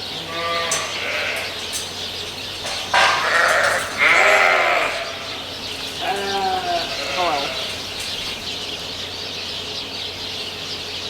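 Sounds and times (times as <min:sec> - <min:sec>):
sheep bleating: 0:00.1 - 0:02.0, 0:02.7 - 0:08.4.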